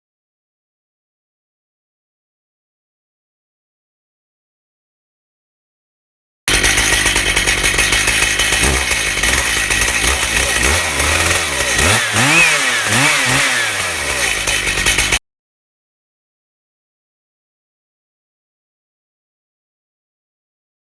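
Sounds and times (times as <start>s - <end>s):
chainsaw cutting wood: 6.5s - 15.2s.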